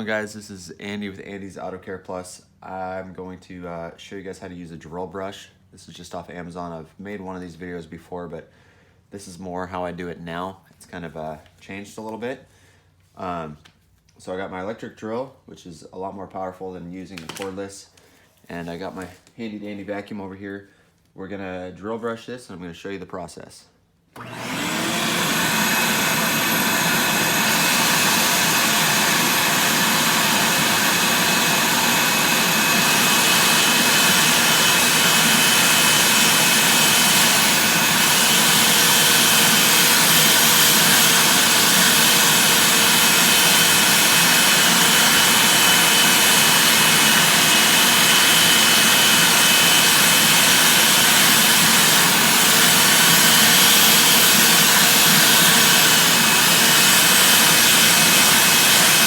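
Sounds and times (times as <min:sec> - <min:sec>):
vacuum cleaner whine: 0:24.2 - 0:59.0.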